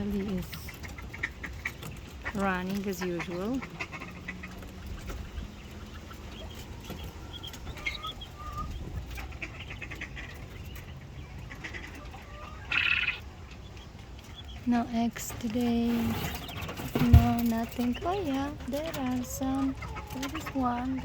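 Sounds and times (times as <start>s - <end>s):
low wind rumble: 0.0s - 21.0s
quails chirping: 0.0s - 21.0s
harsh quail call: 11.5s - 13.3s.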